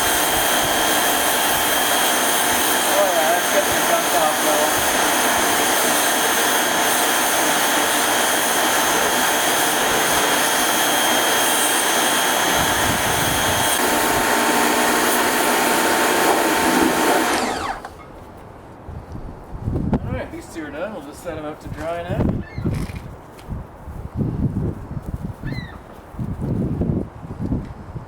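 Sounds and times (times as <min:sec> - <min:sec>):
motor winding down: 0:00.0 - 0:18.0
pressure washer spraying: 0:00.0 - 0:18.0.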